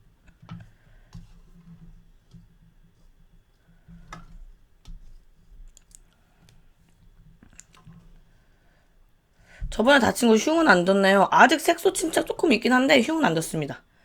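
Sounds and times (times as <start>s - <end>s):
person eating and chewing: 6.9s - 7.9s.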